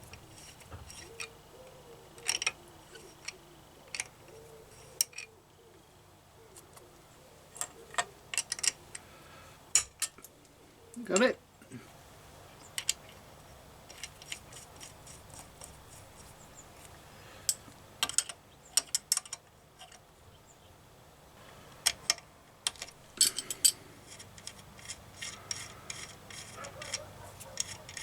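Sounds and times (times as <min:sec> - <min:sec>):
metallic clicks of hand tools: 0:02.2 - 0:05.3, 0:07.6 - 0:09.0, 0:12.7 - 0:13.2, 0:17.5 - 0:20.0, 0:21.7 - 0:28.0.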